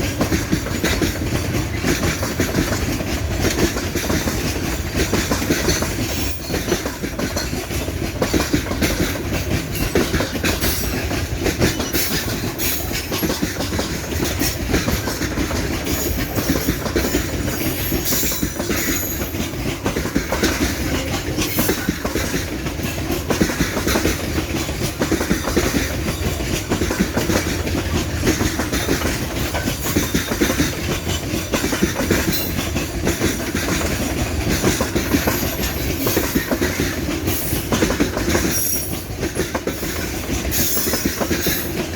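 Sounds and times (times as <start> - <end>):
train wheels clickety-clack: 0.0 - 41.9
faint high wheel squeal: 17.6 - 19.3.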